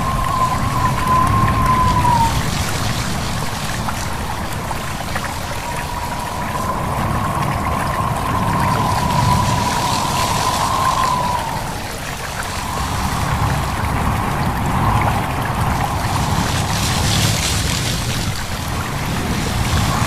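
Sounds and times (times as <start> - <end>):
high wavering whistle: 0.0 - 3.2, 5.1 - 18.0
steady wind: 0.0 - 20.0
stream water babbling: 0.0 - 20.0.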